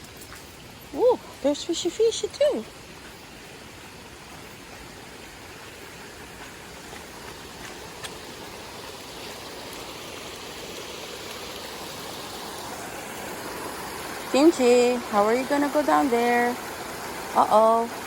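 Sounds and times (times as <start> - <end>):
mountain stream over waterfalls: 0.0 - 18.0.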